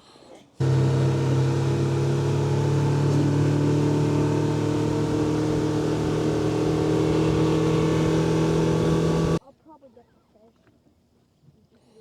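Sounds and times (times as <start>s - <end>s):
outboard motor running: 0.6s - 9.4s.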